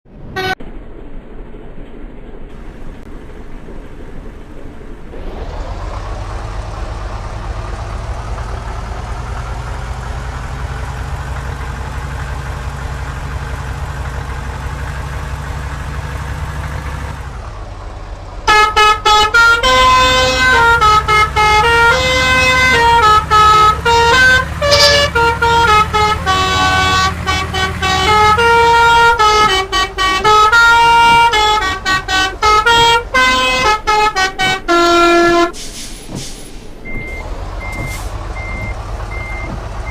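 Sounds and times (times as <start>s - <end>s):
bus engine running: 0.0s - 39.9s
bus musical horn melody: 0.4s - 0.6s, 18.4s - 35.6s.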